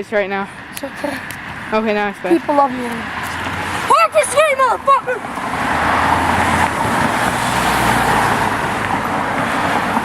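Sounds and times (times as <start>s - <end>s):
car driving past: 5.2s - 10.0s.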